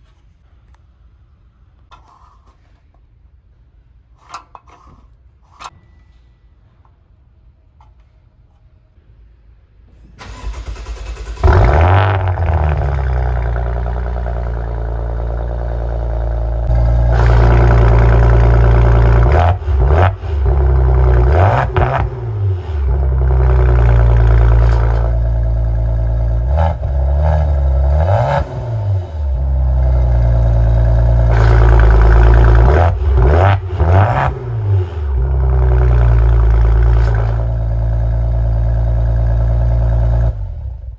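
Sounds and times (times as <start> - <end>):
car engine idling and revving: 10.2 - 40.9
car engine starting: 10.2 - 40.9.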